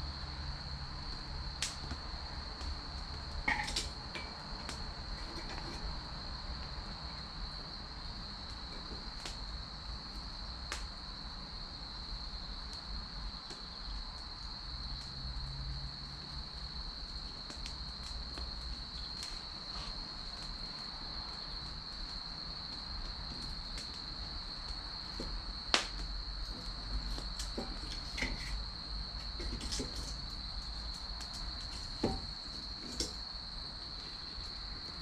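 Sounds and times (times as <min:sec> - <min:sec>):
firewood burning and crackling: 0:00.0 - 0:35.0
high insect trill: 0:00.0 - 0:35.0
sharp fire pops: 0:25.2 - 0:26.3.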